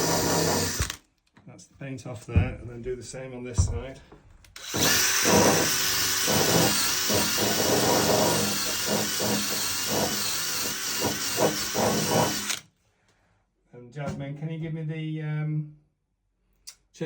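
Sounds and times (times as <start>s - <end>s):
heat gun hissing with whine: 0.0s - 1.0s, 4.6s - 12.6s.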